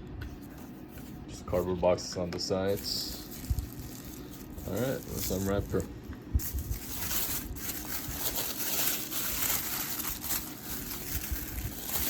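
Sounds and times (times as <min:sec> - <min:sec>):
wrapping paper crinkling: 0:02.7 - 0:12.0.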